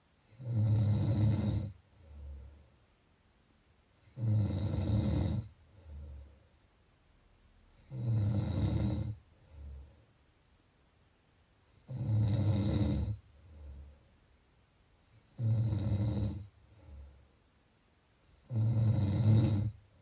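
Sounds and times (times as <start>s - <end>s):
person snoring: 0.3s - 2.5s, 4.1s - 6.2s, 7.8s - 9.9s, 11.8s - 13.9s, 15.2s - 17.0s, 18.4s - 19.8s
soft low breath: 1.6s - 2.9s, 5.5s - 6.7s, 9.0s - 10.3s, 13.1s - 14.2s, 16.4s - 17.5s.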